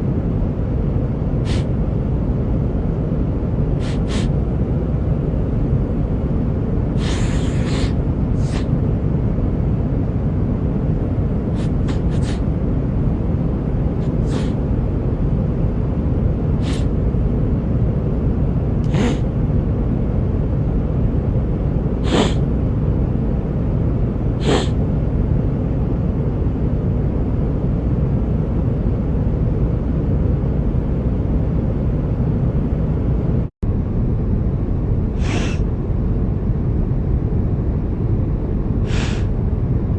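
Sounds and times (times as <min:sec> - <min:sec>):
airliner cabin drone: 0:00.0 - 0:39.9
man sniffling: 0:07.0 - 0:08.7, 0:35.2 - 0:35.6.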